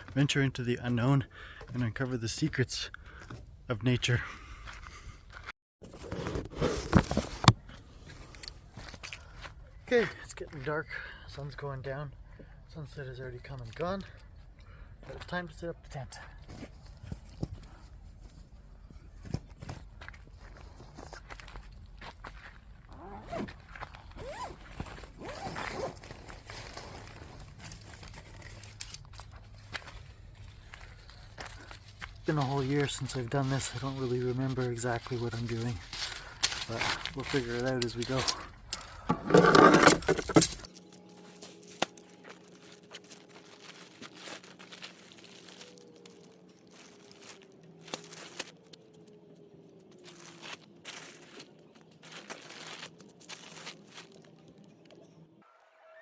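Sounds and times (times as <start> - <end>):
tent fabric crinkling and rustling: 19.1 - 39.0, 40.1 - 55.2
zipper drawn: 23.0 - 23.5, 24.2 - 24.6, 25.2 - 26.0, 39.2 - 40.4
handling noise: 38.2 - 51.4.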